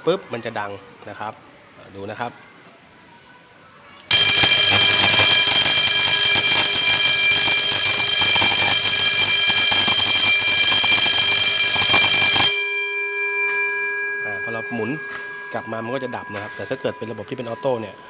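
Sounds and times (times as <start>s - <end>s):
fire alarm bell ringing: 4.1s - 18.0s.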